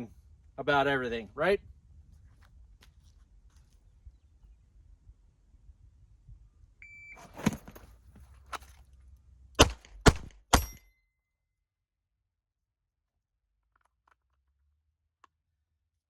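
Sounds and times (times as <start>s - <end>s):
clothing rustle and thump: 7.2s - 8.8s
pistol shots: 9.6s - 10.8s.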